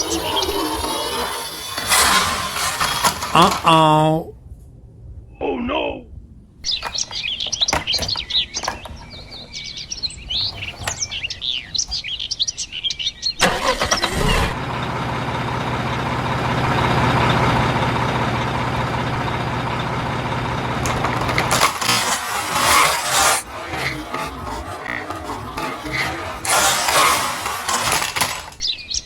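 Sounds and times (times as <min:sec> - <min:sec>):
motor humming loudly: 0:00.0 - 0:03.6, 0:13.5 - 0:28.6
birds chirping: 0:00.0 - 0:04.3, 0:05.2 - 0:14.1, 0:14.7 - 0:29.0.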